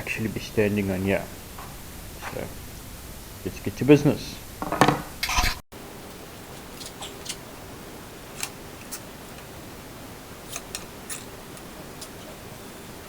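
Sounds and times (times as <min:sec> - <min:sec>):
steady hiss: 0:00.0 - 0:13.0
small parts and tools clicking: 0:06.5 - 0:07.4, 0:08.3 - 0:09.5, 0:10.4 - 0:12.5.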